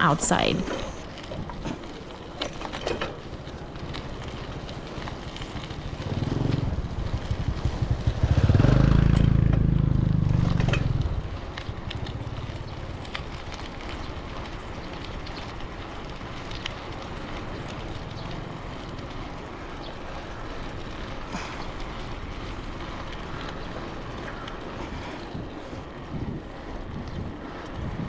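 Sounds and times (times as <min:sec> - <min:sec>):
bicycle rattling over road: 0:00.0 - 0:28.0
low rumble: 0:05.6 - 0:13.7.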